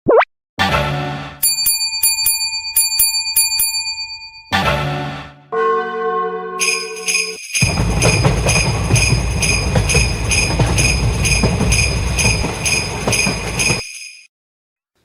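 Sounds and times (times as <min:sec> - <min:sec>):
railroad crossing bell ringing: 0:01.4 - 0:04.6, 0:06.6 - 0:14.3
passing train rumble and clatter: 0:07.6 - 0:13.8.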